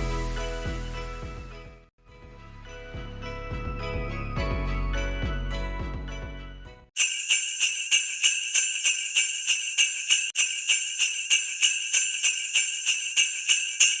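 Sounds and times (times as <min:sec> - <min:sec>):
jingle bells shaking: 0:07.0 - 0:14.0.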